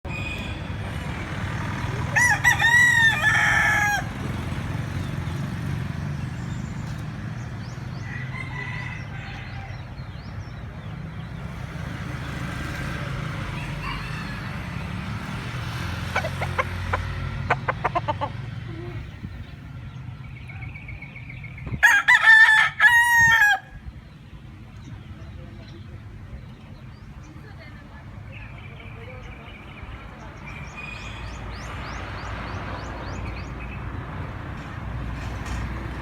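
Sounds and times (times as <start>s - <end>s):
rooster crowing: 2.1s - 4.3s, 8.0s - 9.9s, 13.5s - 14.9s, 21.8s - 23.8s.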